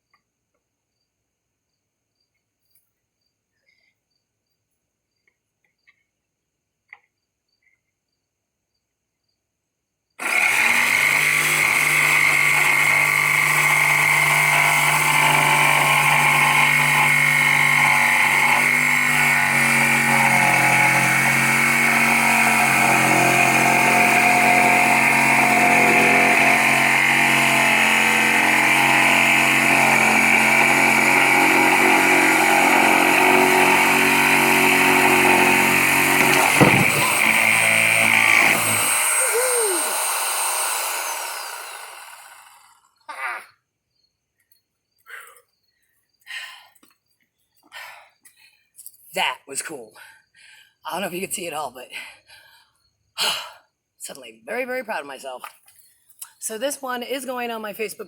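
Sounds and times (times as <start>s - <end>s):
electric jigsaw cutting wood: 10.2s - 43.0s.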